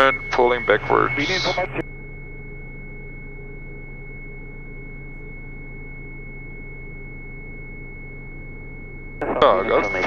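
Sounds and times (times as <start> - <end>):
aircraft engine drone through intercom: 0.0 - 1.8, 9.2 - 10.0
thin high-pitched tone: 0.0 - 10.0.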